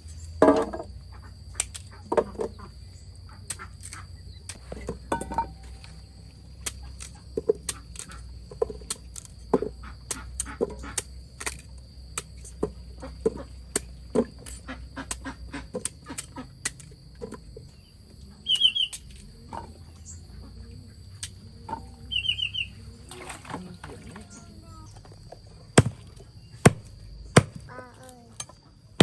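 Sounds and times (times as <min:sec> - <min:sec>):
sharp clicks and knocks: 0:06.6 - 0:17.7
high chirping bird calls: 0:17.7 - 0:21.0, 0:21.7 - 0:23.0.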